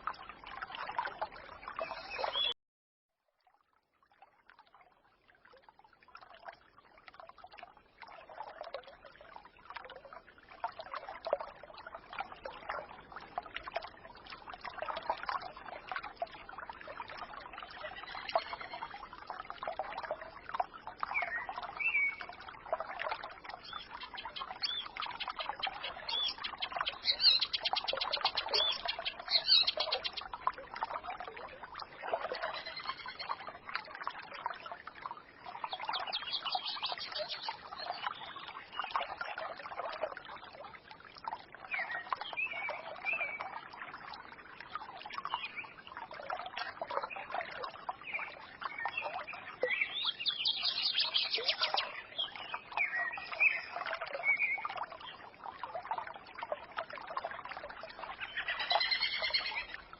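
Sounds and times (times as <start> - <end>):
stream trickling and gurgling: 0.0 - 59.9
songbirds chirping: 1.0 - 2.6, 20.7 - 30.5, 35.5 - 39.3, 47.9 - 55.2, 58.1 - 59.9.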